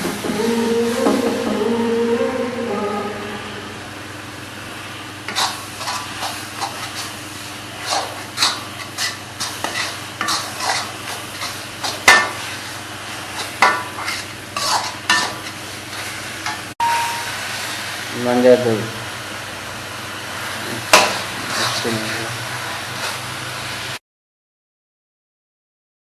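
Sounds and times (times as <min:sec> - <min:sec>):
chicken sizzling: 0:04.3 - 0:24.0
spoon scraping a frying pan: 0:05.3 - 0:07.2, 0:07.8 - 0:12.5, 0:13.3 - 0:16.6.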